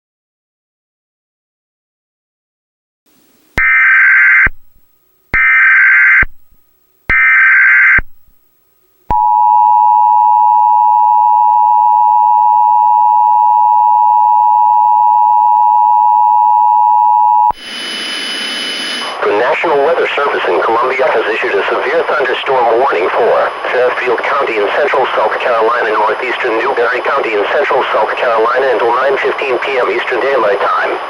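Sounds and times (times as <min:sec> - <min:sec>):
screeching data tones: 0:03.6 - 0:04.6, 0:05.4 - 0:06.4, 0:07.1 - 0:08.1
two-tone attention signal: 0:09.1 - 0:17.6
burst of hiss: 0:17.6 - 0:19.2.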